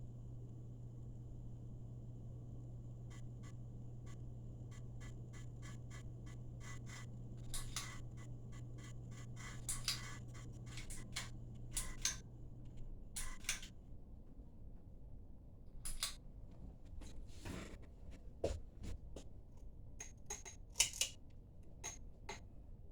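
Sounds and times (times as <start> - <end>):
ceiling fan motor humming: 0.0 - 14.4
faint regular ticking: 3.1 - 13.7.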